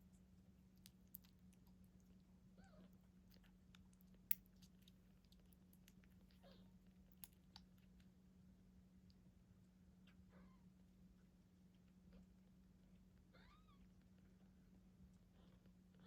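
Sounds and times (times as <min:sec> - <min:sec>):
wet clicking and smacking: 0:00.4 - 0:02.4, 0:03.1 - 0:08.2.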